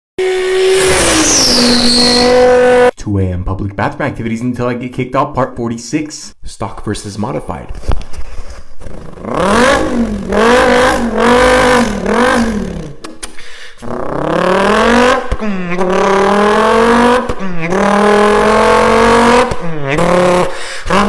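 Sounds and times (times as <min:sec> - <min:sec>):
person imitating engine with voice: 0:09.0 - 0:12.9, 0:13.8 - 0:21.0.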